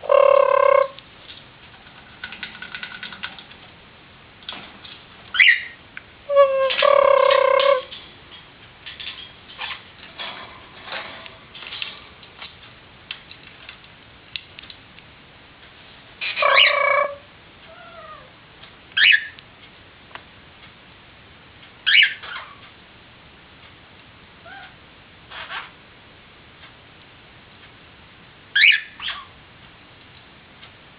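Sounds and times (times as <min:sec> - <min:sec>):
parrot calling: 0:00.0 - 0:01.0, 0:05.3 - 0:07.9, 0:16.2 - 0:18.3, 0:19.0 - 0:19.4, 0:21.8 - 0:22.6, 0:24.4 - 0:25.8, 0:28.5 - 0:29.4
parrot chirps: 0:05.3 - 0:07.9, 0:16.2 - 0:18.3, 0:19.0 - 0:19.4, 0:21.8 - 0:22.6, 0:24.4 - 0:25.8, 0:28.5 - 0:29.4.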